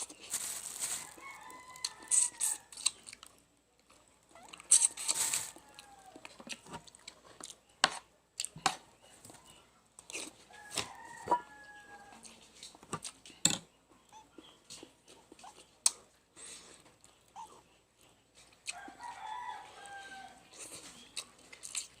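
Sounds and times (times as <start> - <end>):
person eating chicken bones: 0.0 - 3.5, 14.7 - 22.0
rooster crowing: 0.9 - 2.7, 10.6 - 12.3, 18.7 - 20.4.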